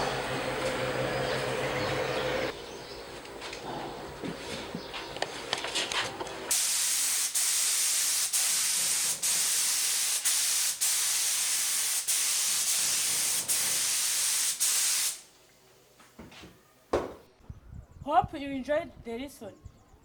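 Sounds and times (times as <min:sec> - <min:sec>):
spray gun hissing: 0:06.5 - 0:15.3.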